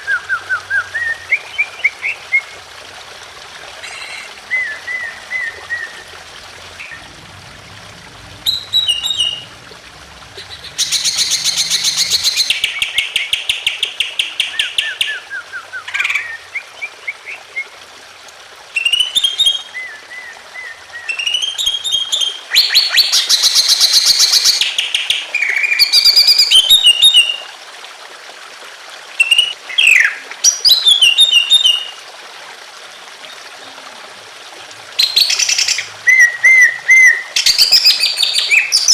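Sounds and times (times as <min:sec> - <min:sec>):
running water trickling: 0:00.0 - 0:38.9
bird singing: 0:08.4 - 0:09.5, 0:10.3 - 0:17.4.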